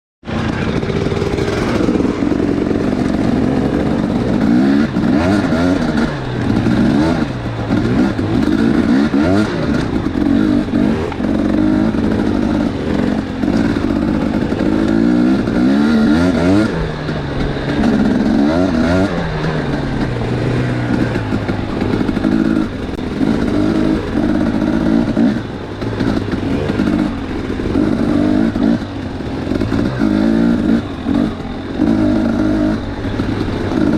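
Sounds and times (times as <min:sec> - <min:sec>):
dirt bike engines revving: 0:00.3 - 0:33.9.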